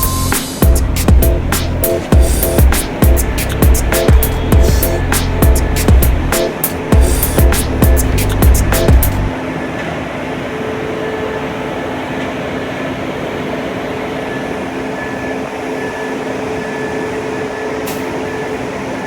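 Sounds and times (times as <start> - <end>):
faint high tone: 0.0 - 0.6
machine humming: 0.0 - 19.0.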